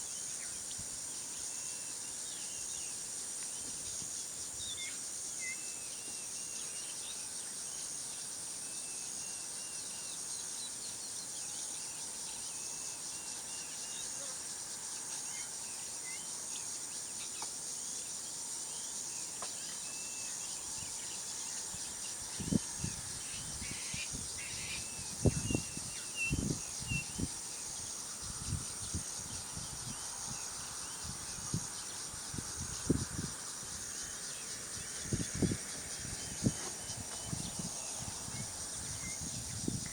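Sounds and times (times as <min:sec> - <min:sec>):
insect drone: 0:00.0 - 0:39.9
bird chirps: 0:19.6 - 0:27.8.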